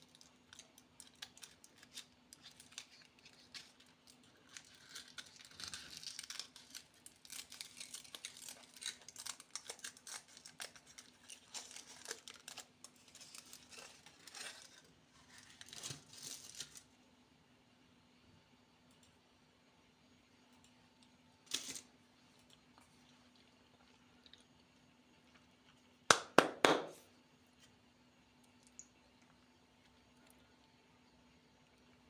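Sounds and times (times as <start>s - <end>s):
plastic wrappers crinkling and tearing: 0.0s - 16.9s, 21.5s - 21.9s.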